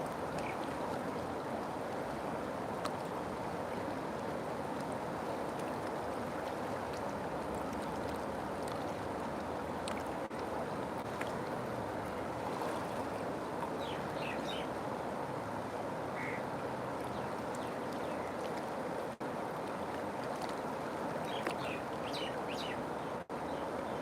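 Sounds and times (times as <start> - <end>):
river water rushing: 0.0 - 24.0
bird short high calls: 16.2 - 16.4.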